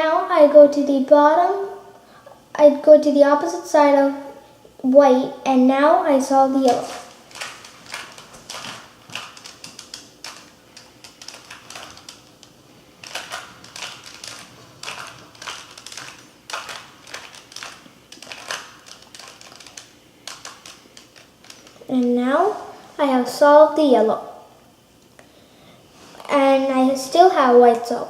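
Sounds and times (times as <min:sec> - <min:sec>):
puzzle cube layers clicking: 0:13.0 - 0:21.7.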